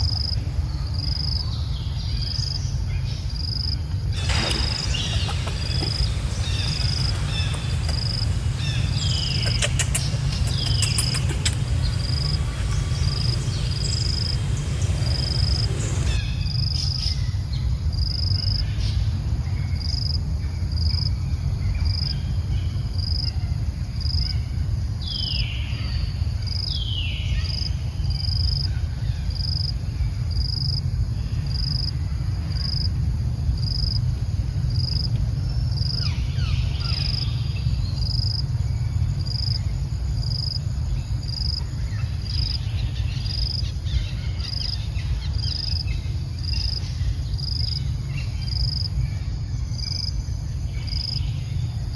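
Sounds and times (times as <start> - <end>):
insect chirping: 3.3 - 17.2, 29.4 - 51.9
low rumble: 4.0 - 17.3
high falling calls: 4.2 - 16.6.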